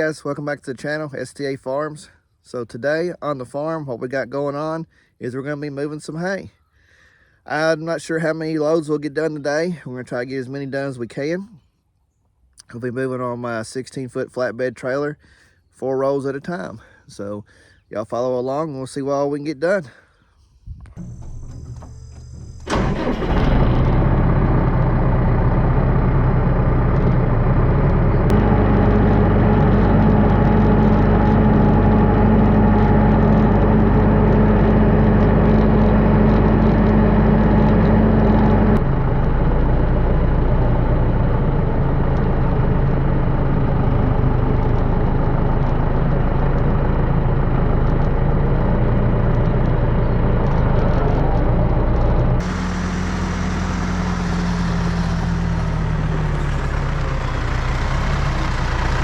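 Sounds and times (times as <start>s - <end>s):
steady hum: 20.7s - 54.6s
truck engine running: 21.0s - 59.0s.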